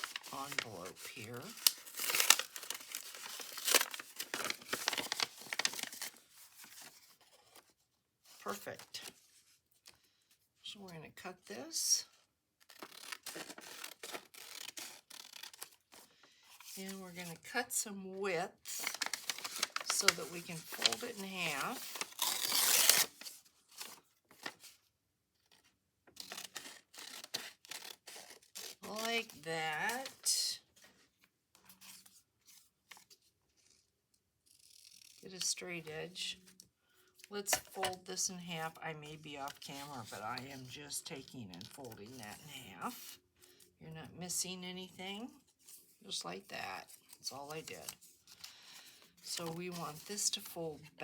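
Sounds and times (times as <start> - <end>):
paper envelope crinkling: 0.0 - 7.7, 12.6 - 17.2, 18.6 - 24.8, 25.4 - 30.3.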